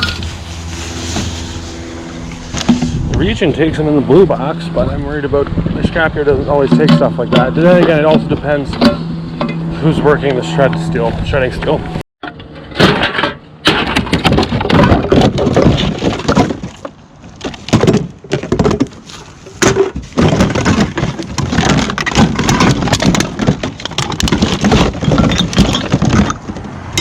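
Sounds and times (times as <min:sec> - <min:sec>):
objects clattering while rummaged: 0:00.0 - 0:01.6, 0:06.5 - 0:09.6, 0:12.2 - 0:27.0.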